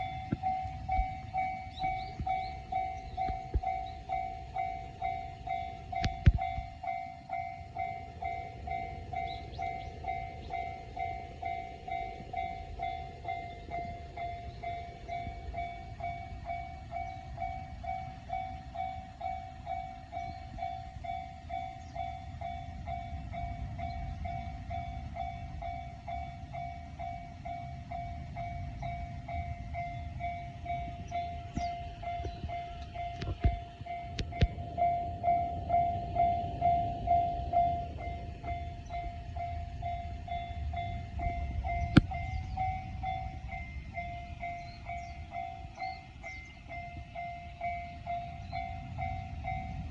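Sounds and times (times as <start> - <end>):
level crossing warning bell ringing: 0.0 - 49.9
train rumbling: 0.0 - 49.9.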